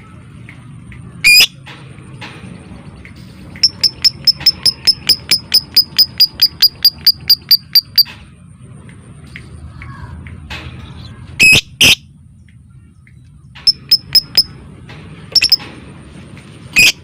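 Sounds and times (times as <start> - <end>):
lovebird sharp high chirps: 1.2 - 1.6, 3.6 - 8.1, 11.4 - 12.0, 13.7 - 14.5, 15.4 - 15.6, 16.8 - 17.0.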